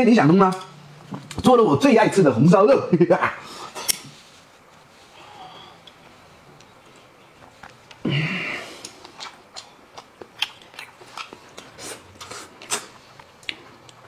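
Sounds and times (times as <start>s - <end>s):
person chewing wetly: 8.8s - 14.0s.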